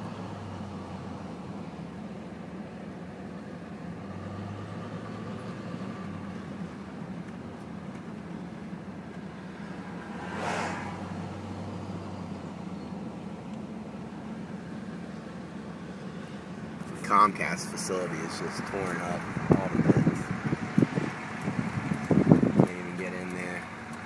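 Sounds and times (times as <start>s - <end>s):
car engine hum with road noise: 0.0s - 24.0s
brief whoosh: 10.1s - 11.3s.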